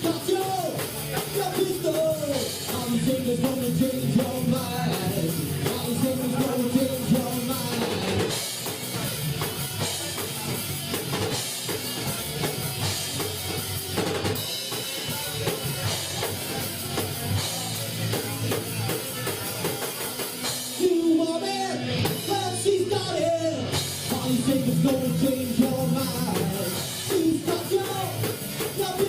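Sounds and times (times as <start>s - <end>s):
person singing: 0.0s - 8.3s, 20.8s - 29.0s
drum kit kick and snare: 0.0s - 21.0s, 23.7s - 29.0s
live rock band playing: 0.0s - 29.0s.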